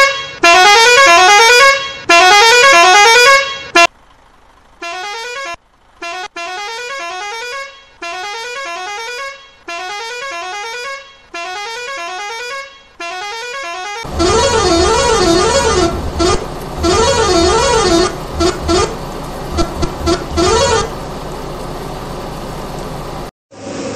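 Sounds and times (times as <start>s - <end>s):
horn with swinging pitch: 0.0s - 3.9s, 4.8s - 21.7s
musical air horn: 0.0s - 3.9s, 4.8s - 21.0s
low rumble: 14.1s - 23.3s.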